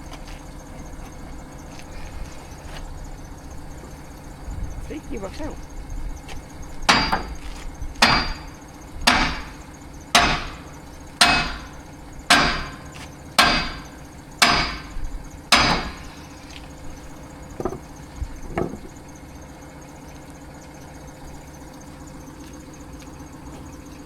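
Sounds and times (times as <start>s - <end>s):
hammer striking metal: 6.9s - 7.4s, 8.0s - 16.3s.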